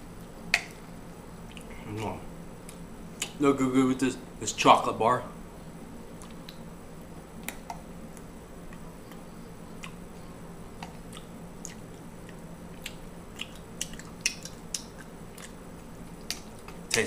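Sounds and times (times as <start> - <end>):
steady low hum: 0.0 - 17.0
person chewing food: 1.5 - 3.4, 6.1 - 6.6, 7.4 - 17.0.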